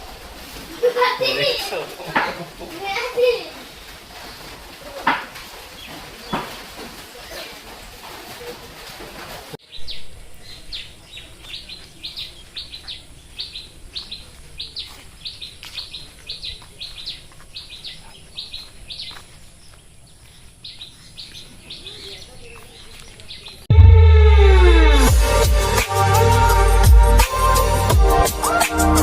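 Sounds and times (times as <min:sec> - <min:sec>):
songbird high chirps: 0:09.6 - 0:23.7.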